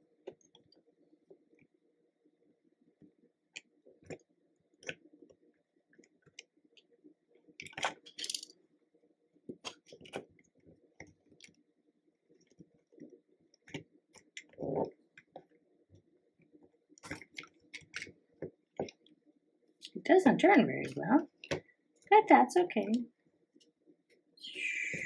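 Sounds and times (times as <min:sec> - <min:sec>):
plastic toys clattering: 0:07.6 - 0:08.5
plastic toys clicking: 0:07.6 - 0:08.5.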